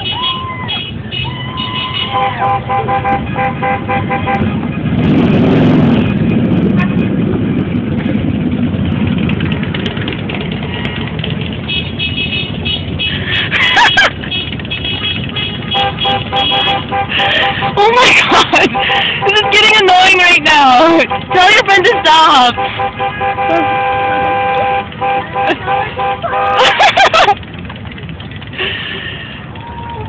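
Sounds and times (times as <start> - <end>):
car horns honking: 0.0 - 5.1, 10.3 - 28.5
loud rushing noise: 4.4 - 9.9.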